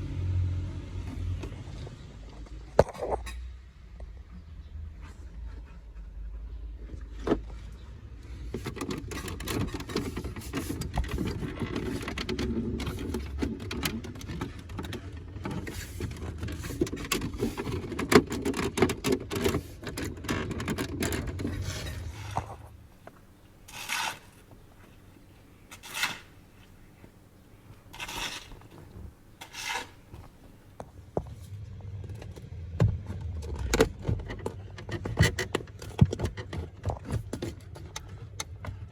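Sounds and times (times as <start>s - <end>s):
hands scraping plastic trim: 8.6s - 25.1s, 25.7s - 27.2s, 27.8s - 30.8s.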